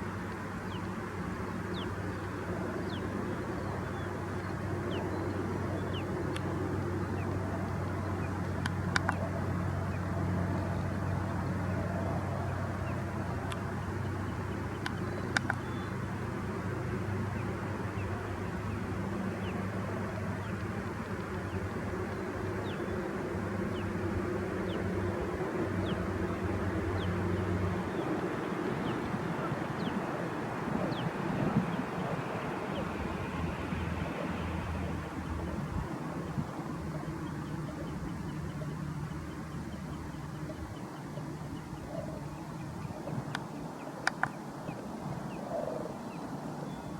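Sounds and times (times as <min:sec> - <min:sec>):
sharp clicks: 0:14.8 - 0:15.7, 0:44.0 - 0:44.4.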